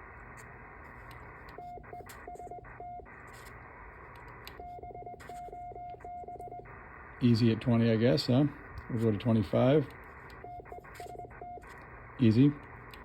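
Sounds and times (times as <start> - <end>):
morse code tone: 10.4 - 12.6.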